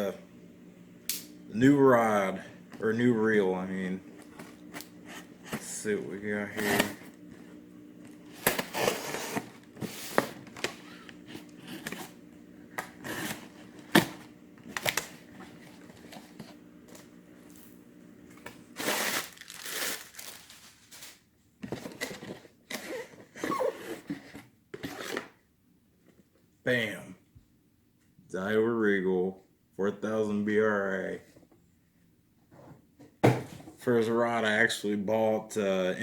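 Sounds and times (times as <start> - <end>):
packaging rustling and crinkling: 18.8 - 22.4.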